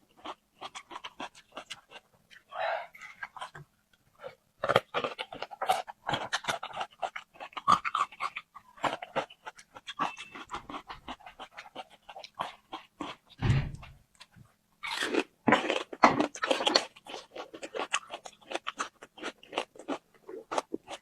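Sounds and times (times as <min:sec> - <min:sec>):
crunching while chewing: 0:00.0 - 0:13.4, 0:14.2 - 0:21.0
low thump: 0:13.4 - 0:14.0.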